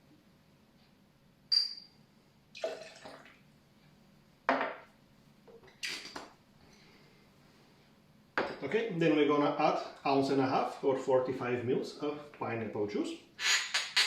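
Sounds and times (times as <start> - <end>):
glass and metal bar tools clinking: 1.5 - 1.9
liquid splashing: 2.5 - 3.4.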